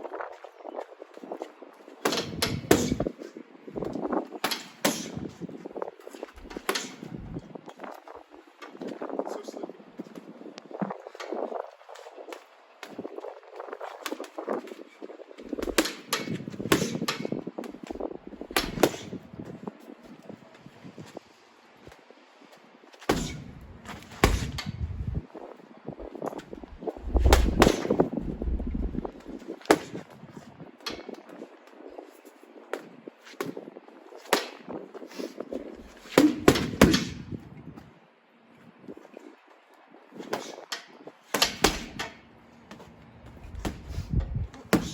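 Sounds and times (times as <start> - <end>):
punches slapping a punch bag: 2.1 - 3.0, 4.4 - 5.2, 15.7 - 17.3, 18.6 - 19.2, 23.0 - 24.8, 35.9 - 37.2, 41.4 - 42.1, 44.6 - 44.9
punches on a punching bag: 18.6 - 19.1, 23.1 - 23.6, 24.2 - 24.7.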